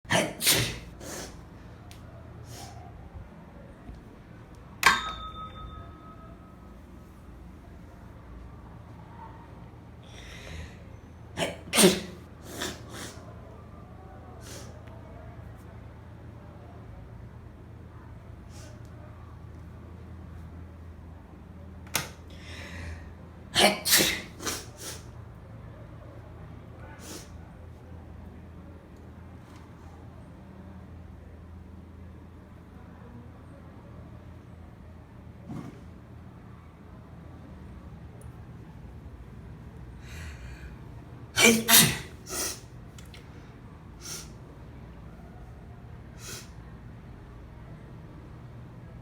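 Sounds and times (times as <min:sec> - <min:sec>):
woman sneezing: 0:00.1 - 0:01.4, 0:11.4 - 0:13.2, 0:23.6 - 0:25.0, 0:41.4 - 0:42.7
faint high tone: 0:04.8 - 0:07.3
woman sniffing: 0:41.5 - 0:42.7.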